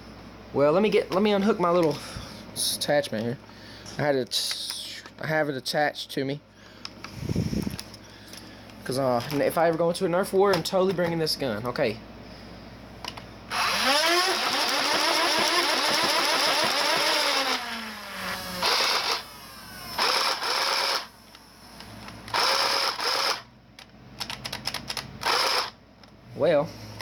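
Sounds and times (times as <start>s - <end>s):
toy blaster flywheel motors whining: 13.5s - 21.2s, 22.3s - 23.5s, 25.2s - 25.8s
quick clicks: 22.3s - 26.2s.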